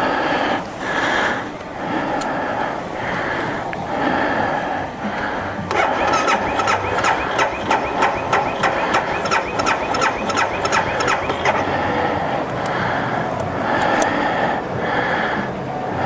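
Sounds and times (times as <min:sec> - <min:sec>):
motorcycle engine cranking: 0:05.7 - 0:11.7.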